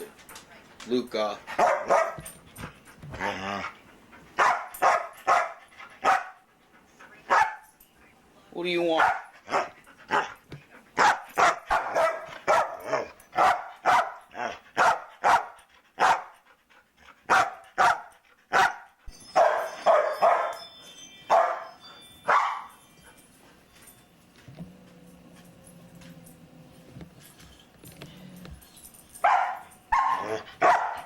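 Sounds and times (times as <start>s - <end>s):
dog barking: 1.6s - 2.2s, 4.4s - 6.4s, 7.3s - 7.6s, 9.0s - 10.3s, 11.0s - 16.3s, 17.3s - 20.6s, 21.3s - 21.7s, 22.3s - 22.7s, 29.2s - 31.0s.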